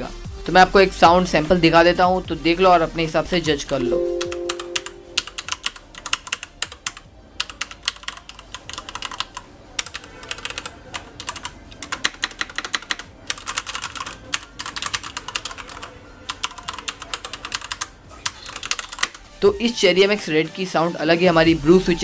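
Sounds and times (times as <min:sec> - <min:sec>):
mechanical keyboard typing: 0:04.2 - 0:19.2.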